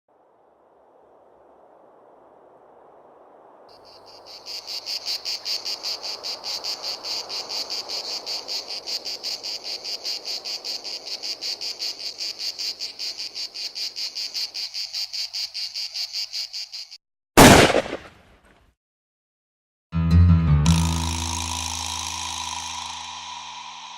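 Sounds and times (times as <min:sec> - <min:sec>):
crickets chirping: 0:00.2 - 0:17.0, 0:20.9 - 0:23.9.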